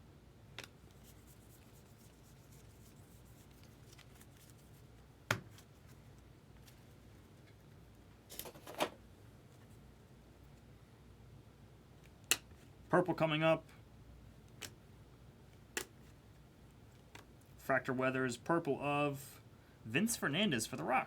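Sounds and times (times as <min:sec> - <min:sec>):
trading cards rustling: 0:02.5 - 0:04.8.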